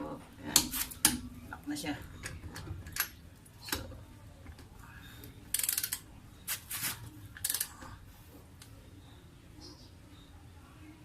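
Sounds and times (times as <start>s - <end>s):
torque wrench ratchet clicks: 5.5s - 6.0s.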